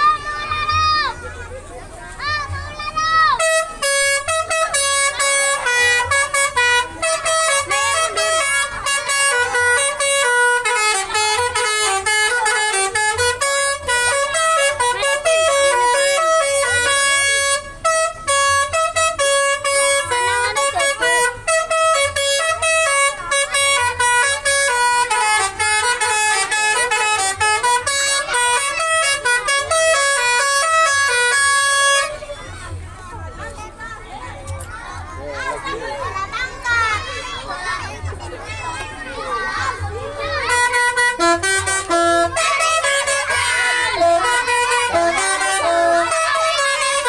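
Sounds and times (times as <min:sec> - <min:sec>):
bus horn playing melody: 0:03.2 - 0:32.8, 0:39.2 - 0:47.0.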